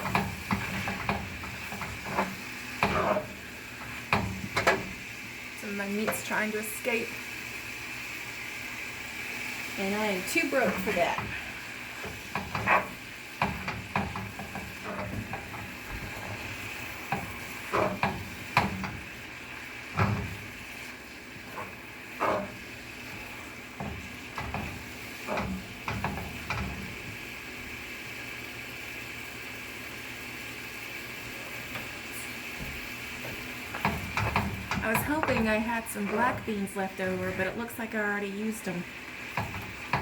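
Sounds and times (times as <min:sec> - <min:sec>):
utensil scraping a pan: 0:00.0 - 0:04.9, 0:10.2 - 0:27.2, 0:33.2 - 0:37.7
meat sizzling in a frying pan: 0:00.0 - 0:40.0.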